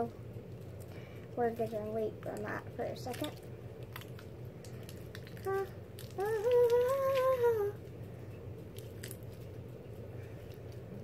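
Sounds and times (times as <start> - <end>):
person humming: 5.4 - 7.8.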